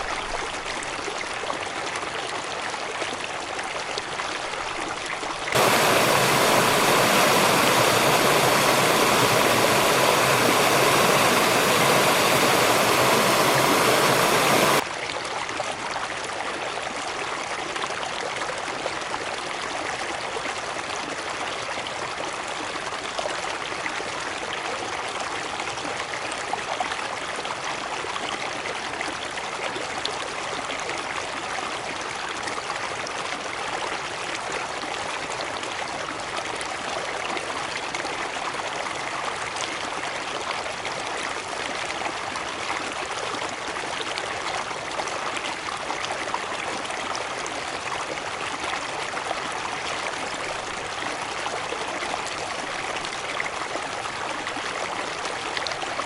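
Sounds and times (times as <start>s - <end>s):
river rushing: 5.6s - 14.8s.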